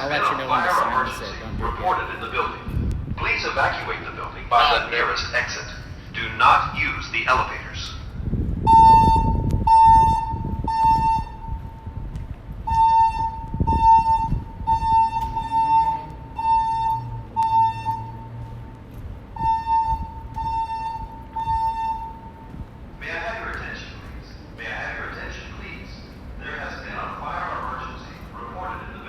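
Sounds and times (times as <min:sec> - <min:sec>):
fire alarm pulsed tone: 0:08.6 - 0:18.7, 0:19.3 - 0:22.7.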